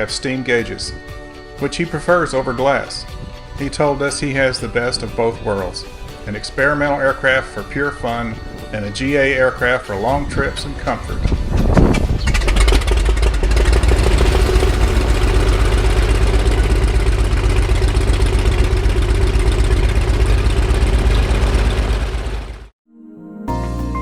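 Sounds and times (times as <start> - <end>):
soft music: 0.0 - 11.7, 13.9 - 17.3, 22.9 - 24.0
light aircraft engine running: 11.3 - 22.7.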